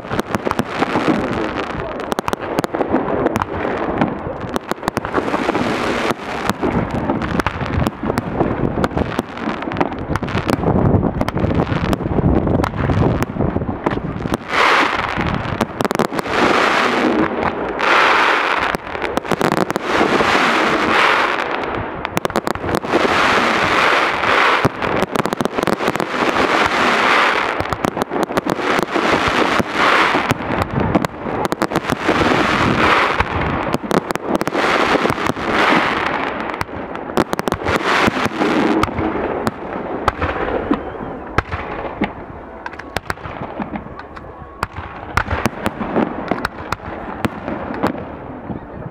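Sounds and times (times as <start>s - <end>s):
fireworks banging: 0.0s - 48.9s
fireworks crackling: 0.0s - 48.9s.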